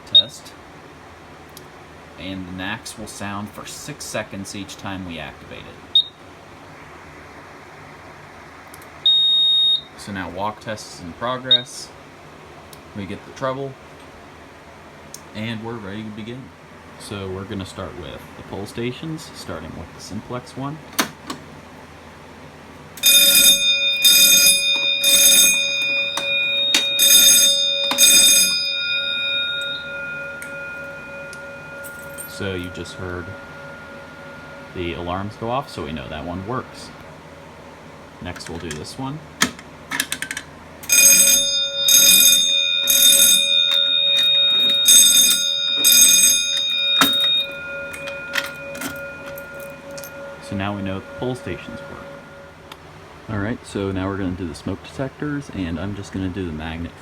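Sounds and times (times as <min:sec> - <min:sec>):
fire alarm bell ringing: 0:09.0 - 0:10.0, 0:23.0 - 0:37.9, 0:40.8 - 0:52.8.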